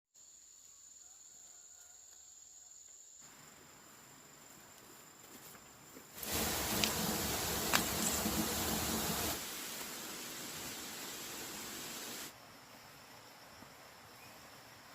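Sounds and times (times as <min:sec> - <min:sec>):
insects trilling: 0:00.2 - 0:14.9
loud even hiss: 0:06.2 - 0:12.3.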